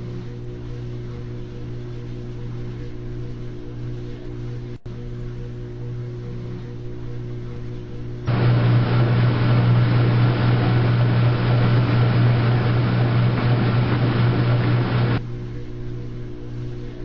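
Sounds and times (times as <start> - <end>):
washing machine motor hum: 5.9 - 15.2
loud rushing noise: 8.3 - 15.2.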